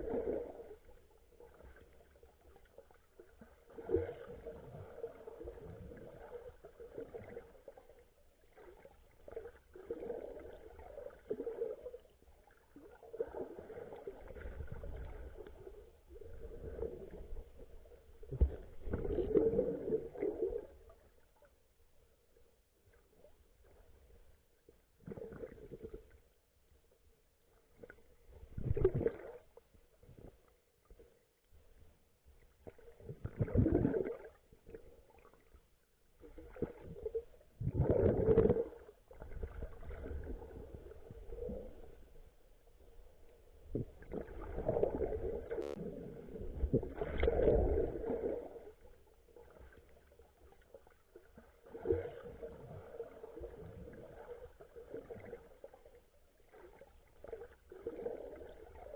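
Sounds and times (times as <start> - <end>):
muffled underwater sloshing: 0.0 - 58.9.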